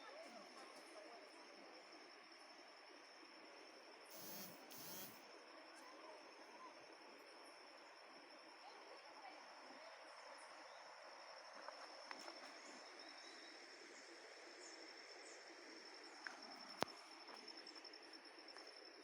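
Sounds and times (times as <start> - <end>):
insect trilling: 4.1 - 5.2.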